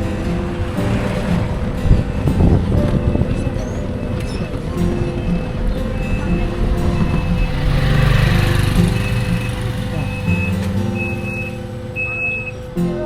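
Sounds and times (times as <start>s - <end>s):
vehicle engine rumble: 0.0s - 13.0s
short high beeps: 8.2s - 12.7s.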